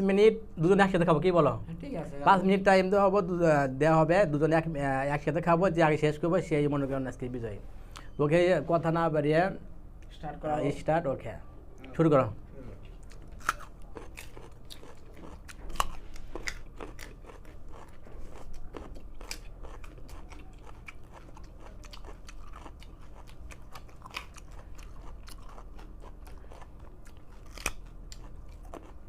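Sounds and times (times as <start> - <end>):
chewing raw carrots: 12.8 - 29.0.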